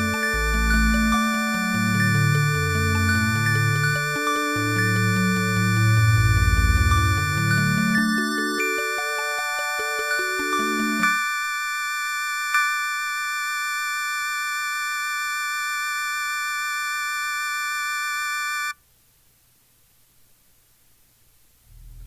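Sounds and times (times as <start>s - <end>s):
high electronic chord: 0.0s - 11.3s
faint hiss and low hum: 18.7s - 22.0s.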